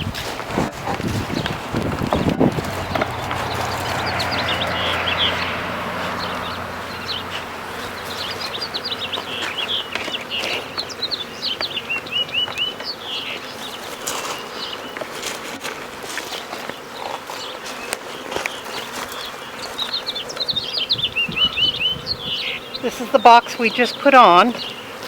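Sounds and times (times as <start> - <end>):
small birds chirping: 0.0 - 15.4, 16.3 - 25.0
honeybees buzzing: 0.0 - 25.0.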